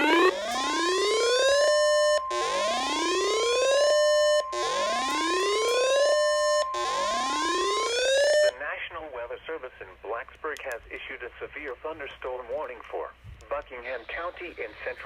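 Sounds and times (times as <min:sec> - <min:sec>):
electronic siren sweeping up: 0:00.0 - 0:08.5
steady high electronic tone: 0:00.0 - 0:08.5.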